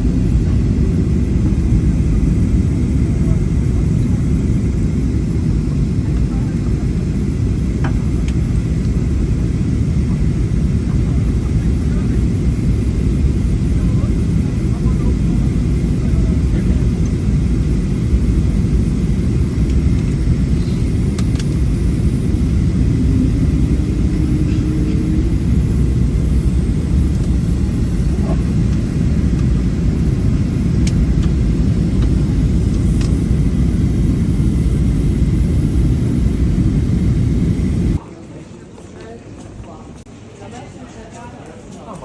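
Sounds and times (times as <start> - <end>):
vehicle rumbling in motion: 21.8 - 31.4.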